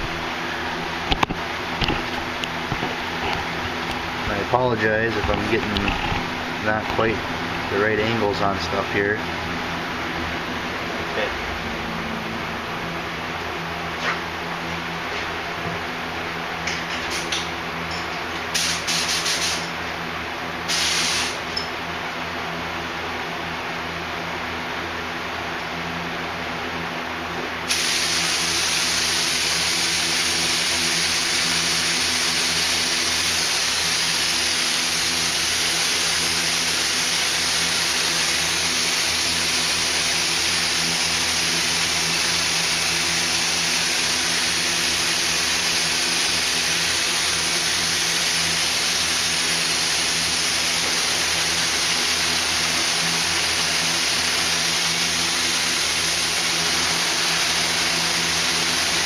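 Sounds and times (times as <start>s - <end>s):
low hum: 0.0s - 14.6s
air gun hissing: 18.5s - 19.7s, 20.6s - 21.5s, 27.7s - 59.0s.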